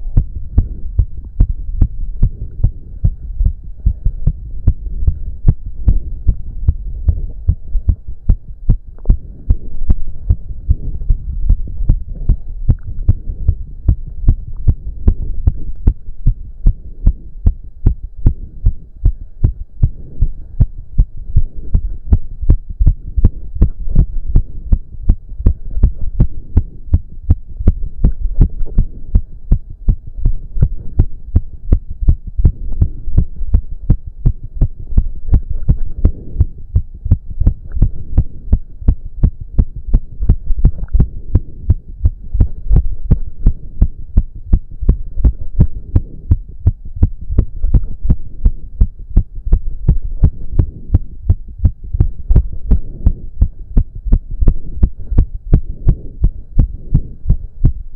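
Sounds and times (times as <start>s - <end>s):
fast heartbeat thumps: 0.0s - 57.9s
heavy breathing: 2.2s - 7.8s.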